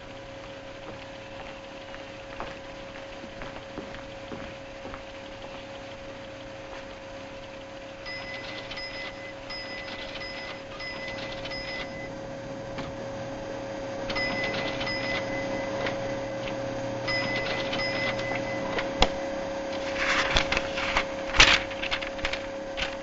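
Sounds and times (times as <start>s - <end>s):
electrical hum: 0.0s - 23.0s
short high beeps: 8.1s - 12.1s, 14.1s - 16.5s, 17.1s - 18.8s.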